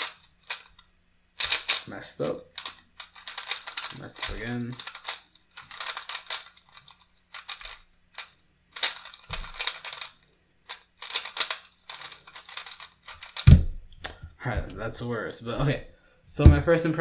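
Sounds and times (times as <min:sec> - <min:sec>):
puzzle cube plastic clacking: 0:00.0 - 0:13.6.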